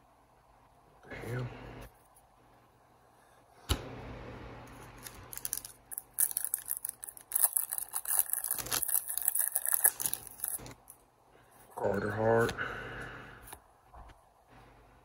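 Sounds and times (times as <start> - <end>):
wrapper crackling: 5.0 - 11.0
wrapper tearing: 5.0 - 11.0.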